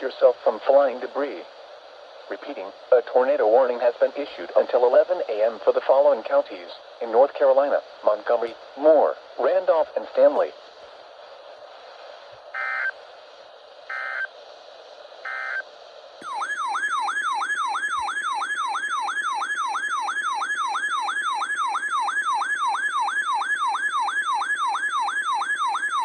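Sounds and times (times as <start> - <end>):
digital data tone bursts: 12.5 - 13.0, 13.9 - 14.3, 15.2 - 19.7
sweeping electronic alert tone: 13.9 - 14.3, 15.3 - 15.6.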